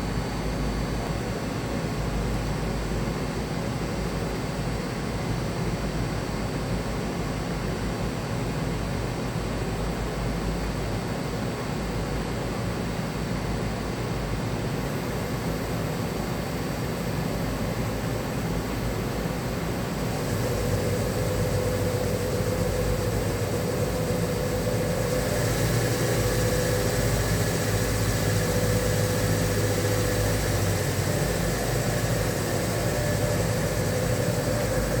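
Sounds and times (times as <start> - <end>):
machining center humming: 19.8 - 35.0
higher hiss: 20.1 - 35.0.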